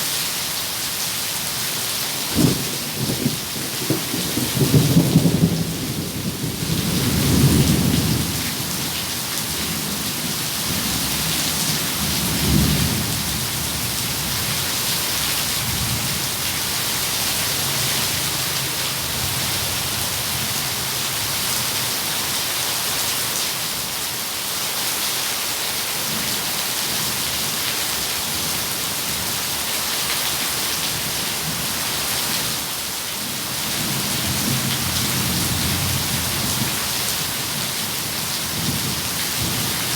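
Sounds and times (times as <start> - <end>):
steady rain falling: 0.0 - 39.9
thunder rumbling: 2.3 - 8.9.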